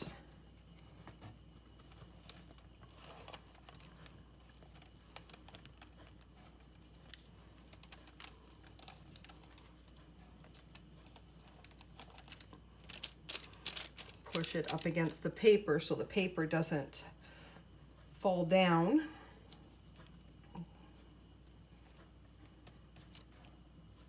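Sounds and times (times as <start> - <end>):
paper crinkling: 1.8 - 15.4.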